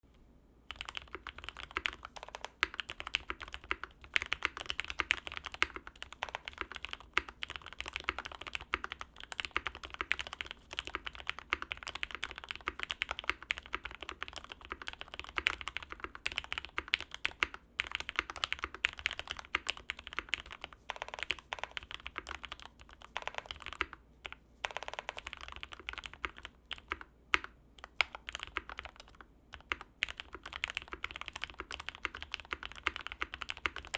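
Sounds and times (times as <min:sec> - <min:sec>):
mechanical keyboard typing: 0:00.7 - 0:33.9.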